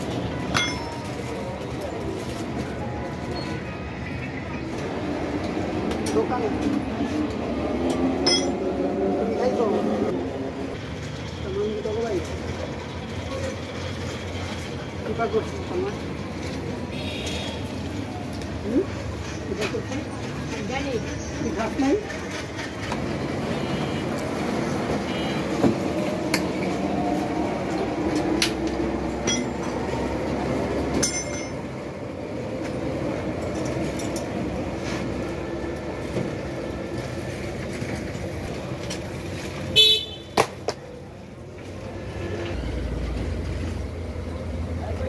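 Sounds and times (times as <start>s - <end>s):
street traffic noise: 0.0s - 45.0s
vehicle horns: 16.9s - 17.8s, 39.7s - 40.5s.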